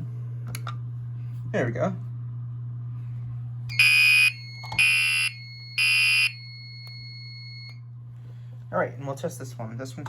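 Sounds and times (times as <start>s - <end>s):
fire alarm horn blasts: 3.7s - 7.8s.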